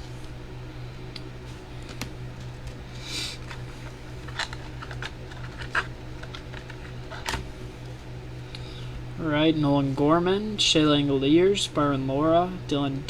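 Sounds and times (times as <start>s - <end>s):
plastic sleeves rustling: 1.2s - 8.0s.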